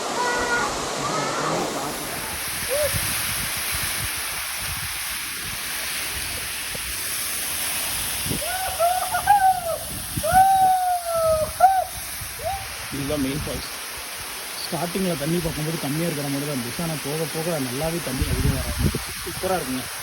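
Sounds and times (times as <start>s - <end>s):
waterfall rushing onto rock: 0.0s - 20.0s
drawn-out rising and falling calls: 8.4s - 12.7s.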